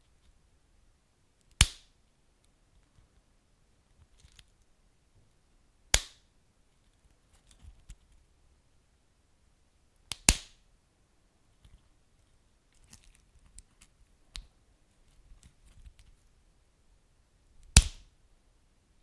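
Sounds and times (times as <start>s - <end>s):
sharp pops of fire: 17.8s - 18.0s.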